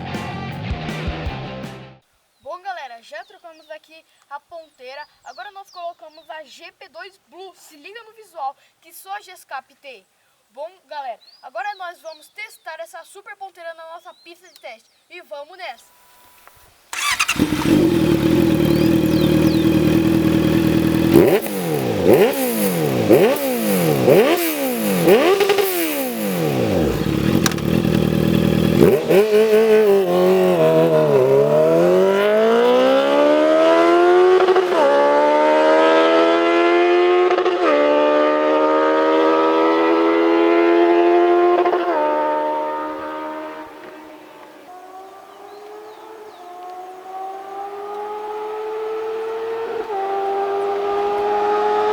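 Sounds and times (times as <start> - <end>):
motorcycle engine revving: 16.1 - 51.9
motorcycle accelerating: 16.2 - 51.9.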